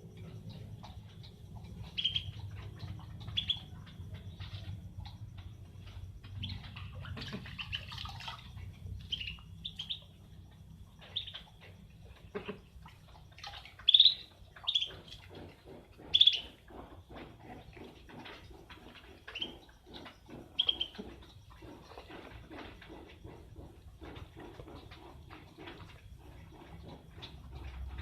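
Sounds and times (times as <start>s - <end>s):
chicken chirping: 1.8s - 4.6s, 9.0s - 10.1s, 11.0s - 11.6s, 13.8s - 15.1s, 16.1s - 16.6s, 20.5s - 21.0s.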